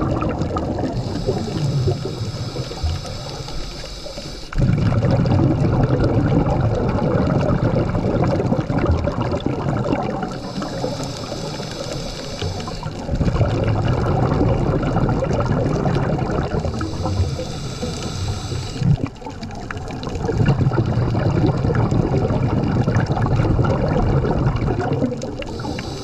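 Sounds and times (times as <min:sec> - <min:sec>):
exhaled bubbles burbling: 0:00.0 - 0:26.0
regulator inhale hiss: 0:00.8 - 0:04.6, 0:10.2 - 0:13.2, 0:16.3 - 0:19.0, 0:25.4 - 0:26.0.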